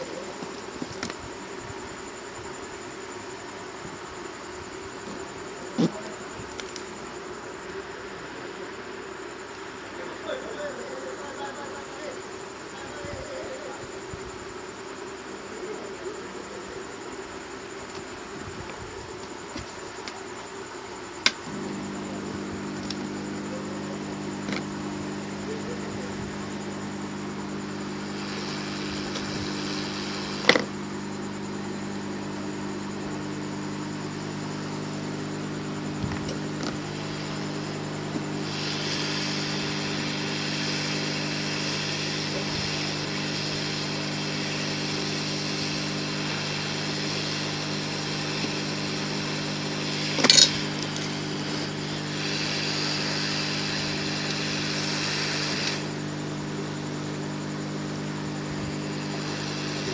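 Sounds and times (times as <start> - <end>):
hiss: 0.0 - 59.9
steady mechanical hum: 0.0 - 59.9
tools clicking on workbench: 50.2 - 51.1.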